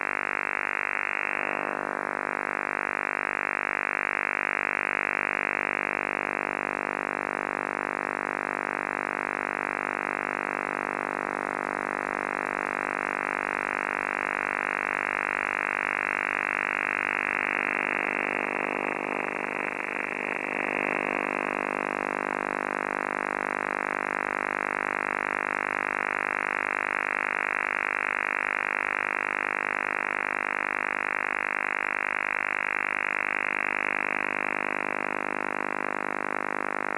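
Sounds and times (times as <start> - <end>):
radio buzzing chord of tones: 0.6 - 2.8, 16.9 - 22.3, 31.7 - 36.9.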